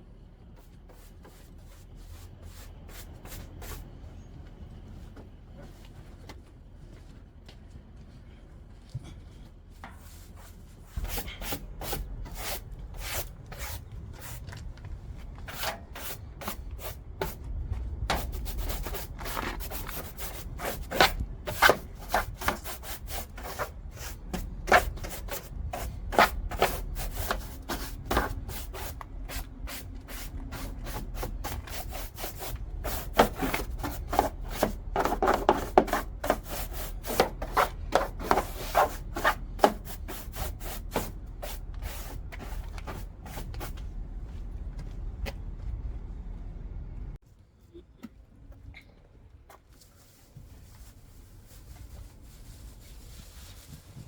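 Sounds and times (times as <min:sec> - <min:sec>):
broom sweeping sand on floor: 0:10.0 - 0:14.6, 0:15.4 - 0:17.4, 0:18.1 - 0:43.8.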